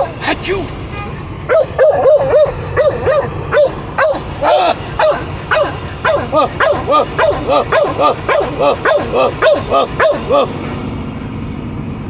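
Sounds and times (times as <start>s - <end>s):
dogs barking: 0.0s - 0.2s, 1.4s - 10.6s.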